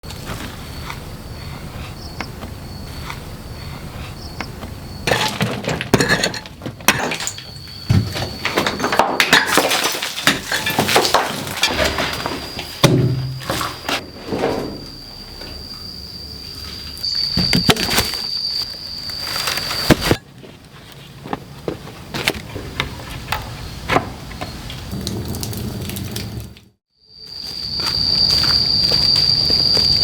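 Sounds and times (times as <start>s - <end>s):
high insect trill: 0.1s - 21.1s, 26.9s - 30.0s
cracks knocks and clatter: 4.4s - 14.0s.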